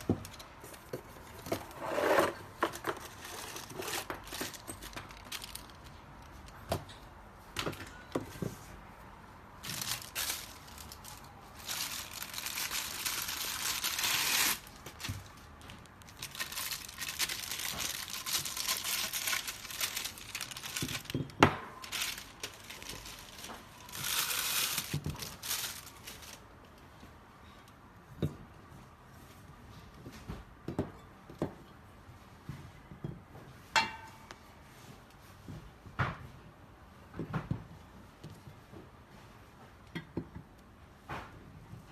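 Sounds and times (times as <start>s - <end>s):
packaging crinkling and tearing: 2.8s - 6.0s, 9.6s - 21.2s, 21.8s - 26.6s.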